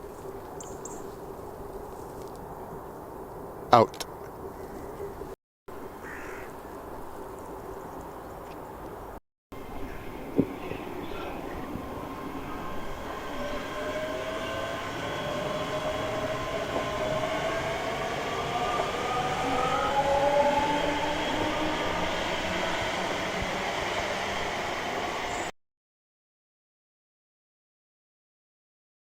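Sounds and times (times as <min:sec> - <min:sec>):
motor whining tones rising: 0:09.6 - 0:25.5
vehicle rushing noise: 0:09.6 - 0:25.5.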